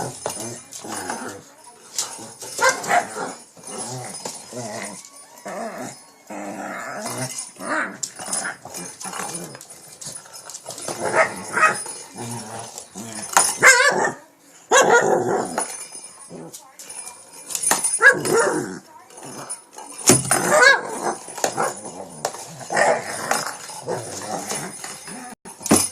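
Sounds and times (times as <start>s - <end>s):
dog growling and whining: 3.0s - 9.6s, 10.9s - 13.4s, 20.3s - 25.4s.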